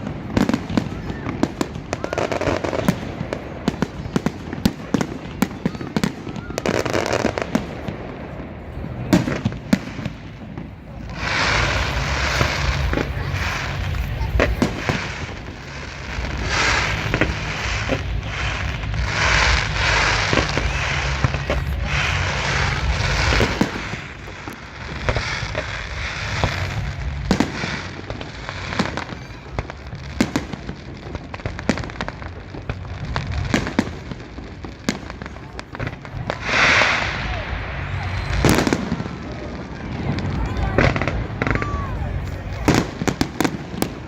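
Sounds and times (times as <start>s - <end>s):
fireworks crackling: 0.0s - 44.0s
fireworks shells bursting: 11.1s - 29.3s.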